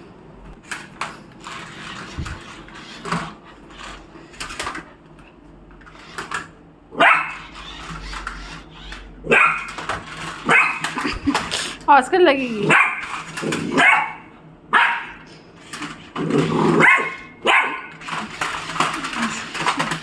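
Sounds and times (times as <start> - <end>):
dog barking: 7.0 - 7.4, 9.2 - 9.7, 10.4 - 10.8, 12.6 - 13.1, 13.7 - 15.2, 16.8 - 17.9.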